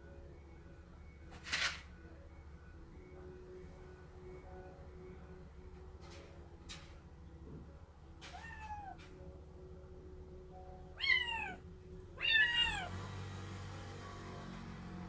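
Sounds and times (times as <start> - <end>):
kitten meowing: 8.3 - 9.0, 11.0 - 11.6, 12.2 - 12.9.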